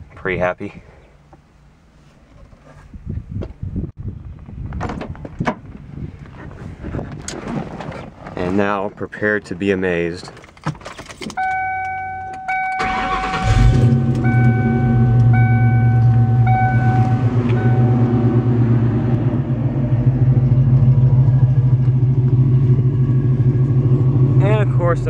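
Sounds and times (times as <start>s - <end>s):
dashboard warning chime beeping: 11.4s - 19.0s
engine cranking: 12.6s - 18.0s
vee eight engine idling deeply: 12.8s - 25.0s.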